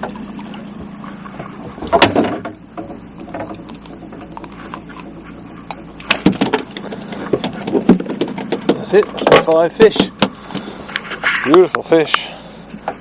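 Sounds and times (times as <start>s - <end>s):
steady low hum: 0.0s - 13.0s
knocks and taps in boat: 6.1s - 10.7s.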